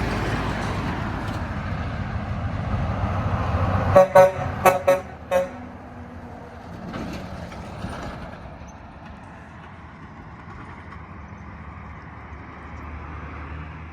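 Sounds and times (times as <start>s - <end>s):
truck engine running: 0.0s - 9.8s
road noise: 0.0s - 13.9s
truck horn: 3.8s - 6.2s.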